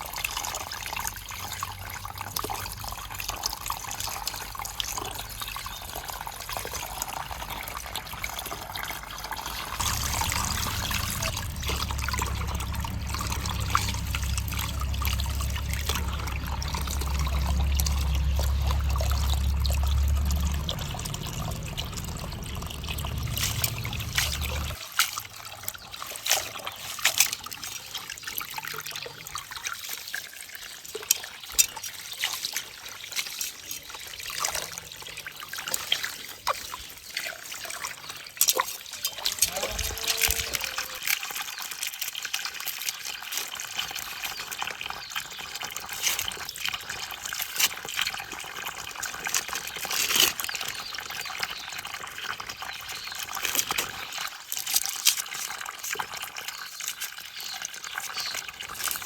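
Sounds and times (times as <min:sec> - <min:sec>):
water trickling: 0:00.0 - 0:59.0
low rumble: 0:07.6 - 0:24.8.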